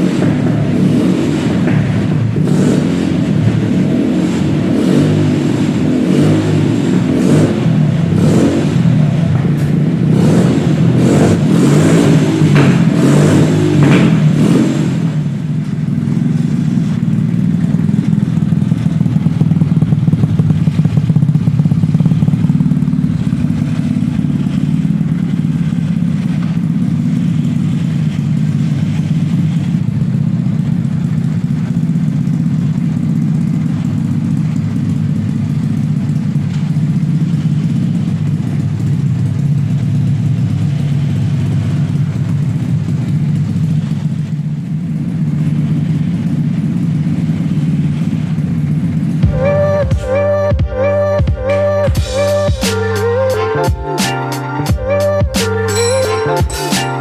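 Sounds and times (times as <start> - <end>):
small petrol engine revving: 0.0 - 31.5.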